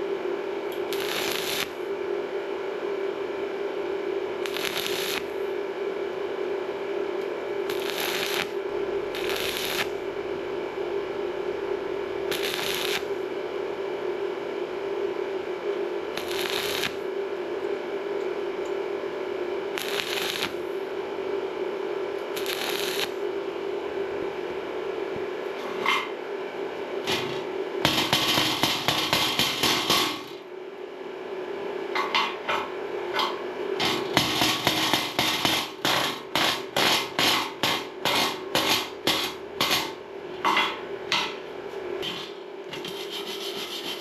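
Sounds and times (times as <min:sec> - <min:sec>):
steady hum: 0:00.0 - 0:44.0
welding arc crackling: 0:00.7 - 0:01.9, 0:04.4 - 0:05.4, 0:07.6 - 0:10.5, 0:12.2 - 0:13.3, 0:16.1 - 0:17.0, 0:19.7 - 0:20.7, 0:22.2 - 0:23.2, 0:27.1 - 0:30.4, 0:33.8 - 0:40.0.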